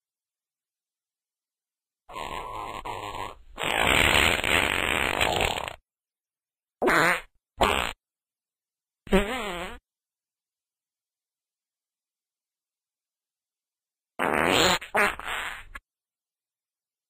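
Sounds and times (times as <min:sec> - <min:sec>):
farting: 0:02.1 - 0:05.8, 0:06.8 - 0:08.0, 0:09.1 - 0:09.8, 0:14.2 - 0:15.8.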